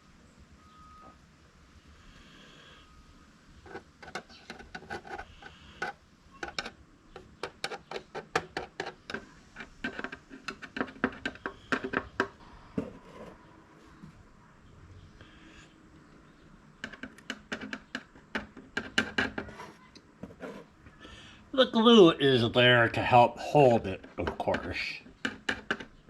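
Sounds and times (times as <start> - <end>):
plastic parts and tools clicking: 3.7 - 12.9, 16.8 - 19.6, 24.0 - 26.0.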